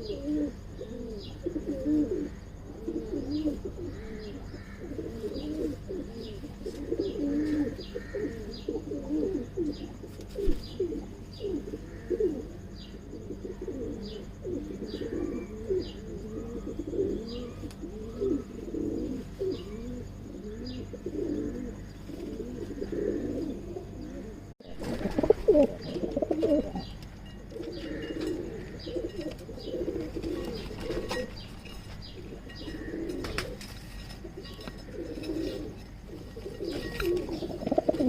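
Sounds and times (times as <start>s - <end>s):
pigeons cooing: 0.0s - 38.0s.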